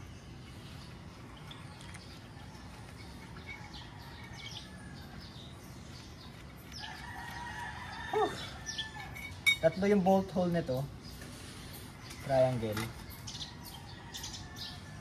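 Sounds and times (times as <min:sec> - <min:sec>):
small birds chirping: 0:00.0 - 0:15.0
rooster crowing: 0:03.5 - 0:05.5, 0:06.8 - 0:09.4.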